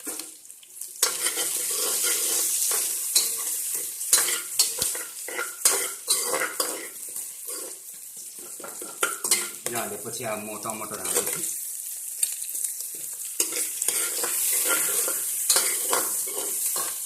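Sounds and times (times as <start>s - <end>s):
masala sizzling in hot oil: 0.0s - 17.0s
metal spoon scraping pot: 13.4s - 17.0s.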